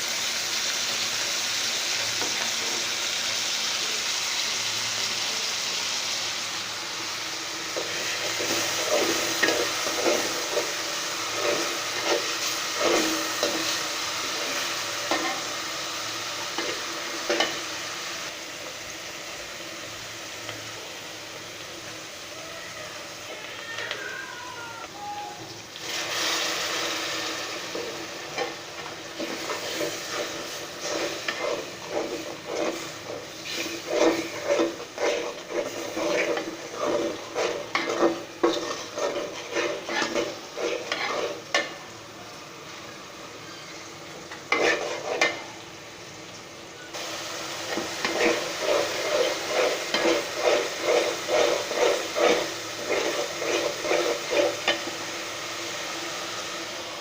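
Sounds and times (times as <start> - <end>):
food sizzling in a pan: 0.0 - 57.0
spatula scraping a pan: 7.7 - 15.6, 16.4 - 17.6, 25.9 - 41.8, 44.3 - 45.6, 47.6 - 55.2.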